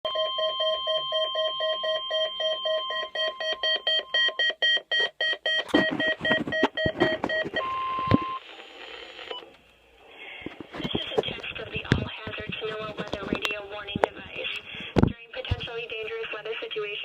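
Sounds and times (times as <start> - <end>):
rapid electronic alert beeping: 5.3 - 8.4.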